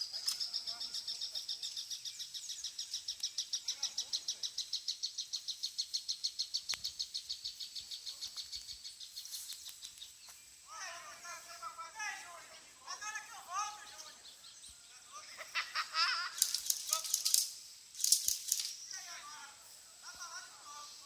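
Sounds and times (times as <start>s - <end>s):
sharp click: 16.4s - 18.8s.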